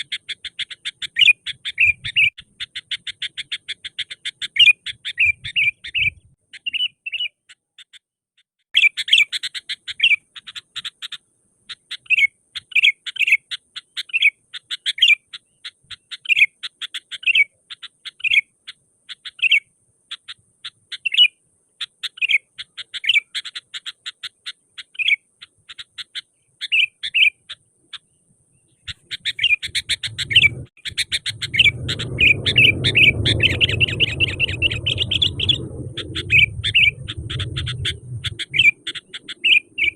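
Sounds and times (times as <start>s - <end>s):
bulbul singing: 0.0s - 8.1s, 8.7s - 39.9s
low rumbling noise: 30.0s - 39.9s.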